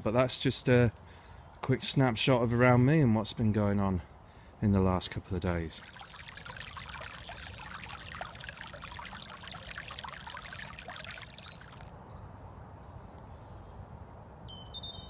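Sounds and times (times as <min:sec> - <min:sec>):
floodwater splashing: 0:05.7 - 0:11.8
steady rush of water: 0:05.7 - 0:11.8.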